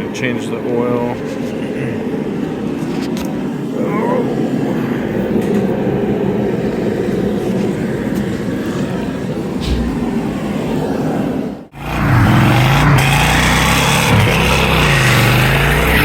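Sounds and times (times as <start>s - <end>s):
road noise: 0.7s - 16.0s
car engine running: 11.8s - 16.0s.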